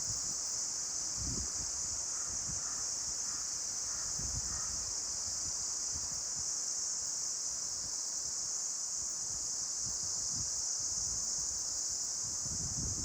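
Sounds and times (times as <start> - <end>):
high-pitched hiss: 0.0 - 13.0
wind rustling leaves: 0.0 - 13.0
wind buffeting microphone: 12.3 - 13.0.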